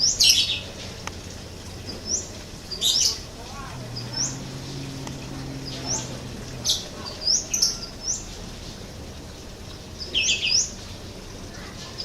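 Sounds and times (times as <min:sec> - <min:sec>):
birds chirping: 0:01.5 - 0:11.0
faint low hum: 0:03.1 - 0:09.7.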